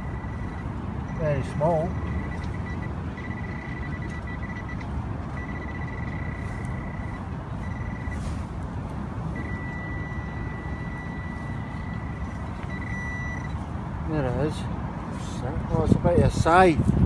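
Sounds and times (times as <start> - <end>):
metal detector beep tone: 0.0 - 8.5, 9.3 - 13.6
wind rumble on microphone: 14.7 - 17.0.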